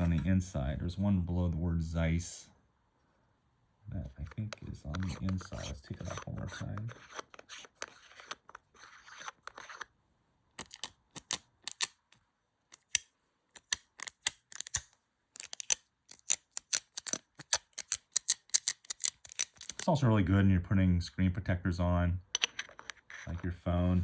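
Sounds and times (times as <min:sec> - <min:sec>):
lens filter unscrewing: 0:04.2 - 0:09.9.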